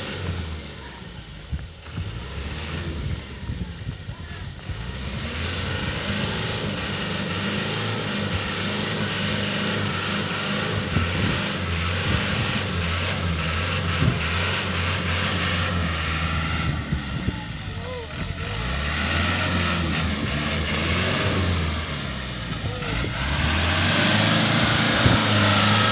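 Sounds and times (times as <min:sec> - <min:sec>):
truck diesel engine running: 0:00.0 - 0:25.9
truck moving over rough ground: 0:00.0 - 0:25.9.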